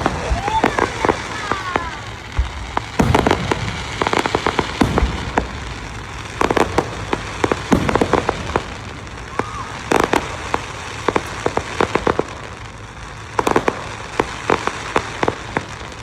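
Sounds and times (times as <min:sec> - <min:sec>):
falling whistles: 0:00.0 - 0:11.4
fireworks crackling hiss: 0:00.0 - 0:16.0
fireworks popping and banging: 0:00.0 - 0:16.0.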